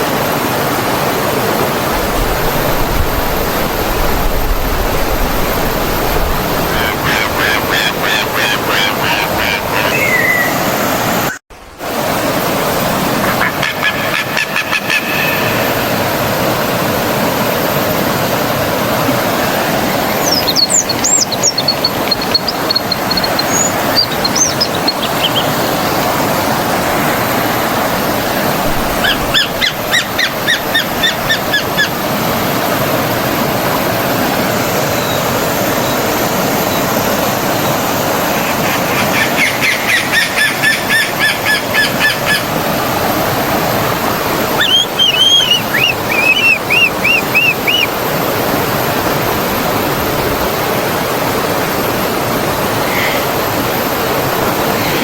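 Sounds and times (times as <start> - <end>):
stream flowing: 0.0 - 55.0
birds calling rapidly: 4.9 - 11.4, 19.6 - 26.7, 28.7 - 32.9, 37.5 - 42.6, 44.0 - 48.4
high bird chirps: 6.7 - 10.7, 20.2 - 25.9, 44.5 - 48.0.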